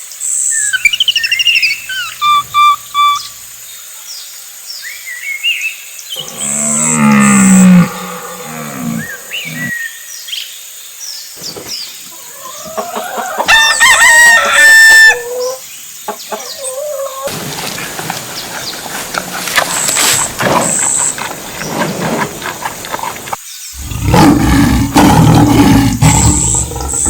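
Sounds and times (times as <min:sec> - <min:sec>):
animal calls: 0:00.5 - 0:03.6, 0:06.2 - 0:09.8, 0:12.2 - 0:27.0.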